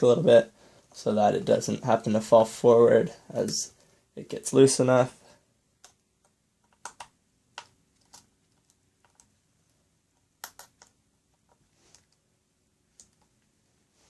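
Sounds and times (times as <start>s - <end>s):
screwdriver clicks and taps: 6.6s - 9.3s, 10.4s - 11.0s.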